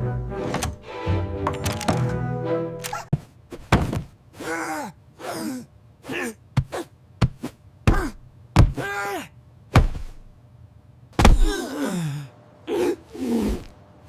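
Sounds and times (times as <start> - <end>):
cartoon thunks: 2.9 - 4.1, 6.6 - 8.9, 9.7 - 10.2, 11.2 - 11.7.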